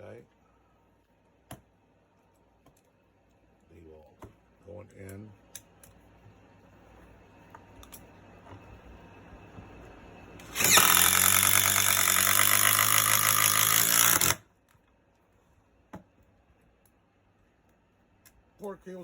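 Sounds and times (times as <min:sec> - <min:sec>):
impact driver hammering: 0:10.6 - 0:14.4.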